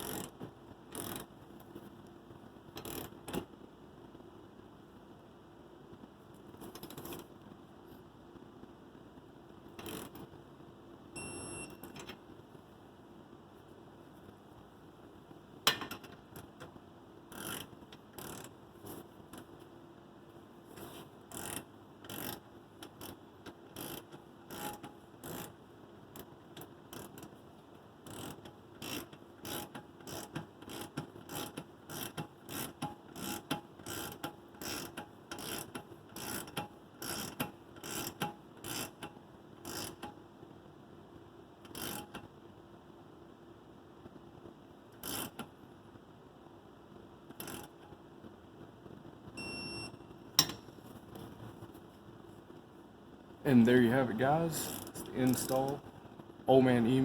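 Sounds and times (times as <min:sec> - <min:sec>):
torque wrench ratcheting clicks: 0:00.9 - 0:01.3, 0:17.3 - 0:18.5, 0:21.3 - 0:25.5, 0:26.9 - 0:27.3, 0:28.0 - 0:40.1, 0:41.7 - 0:42.2, 0:45.0 - 0:45.5, 0:47.4 - 0:47.8
brief high beep: 0:49.4 - 0:50.0.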